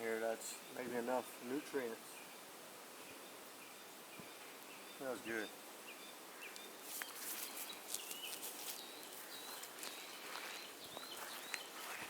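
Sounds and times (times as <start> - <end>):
birds whistling: 3.0 - 12.0
plants rustling: 6.6 - 12.0
footsteps: 6.8 - 12.0.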